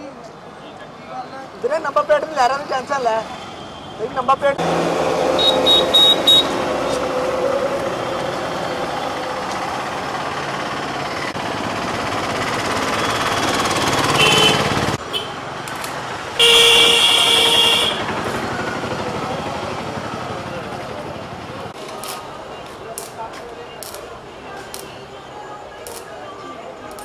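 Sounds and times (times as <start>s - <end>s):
road traffic: 0.0s - 27.0s
loud horn blast: 16.4s - 18.1s.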